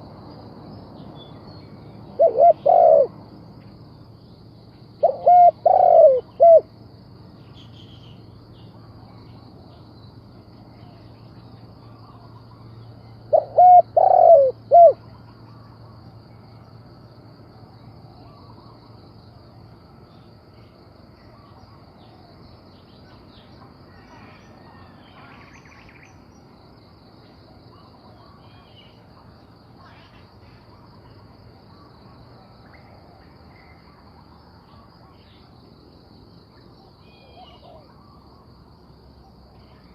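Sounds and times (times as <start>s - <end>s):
dove cooing: 2.2s - 3.2s, 5.0s - 6.7s, 13.3s - 15.0s, 37.1s - 38.4s.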